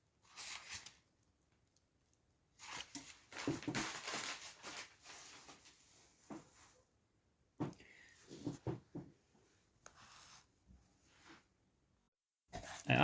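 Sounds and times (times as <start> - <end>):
packaging rustling: 2.6 - 5.8.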